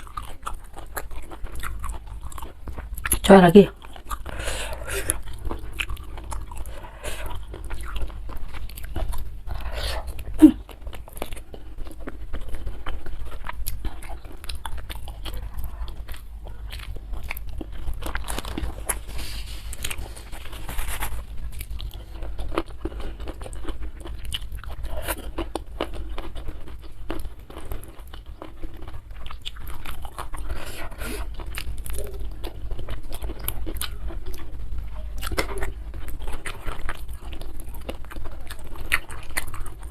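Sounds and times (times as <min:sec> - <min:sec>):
crunchy food chewing: 0:00.0 - 0:39.9.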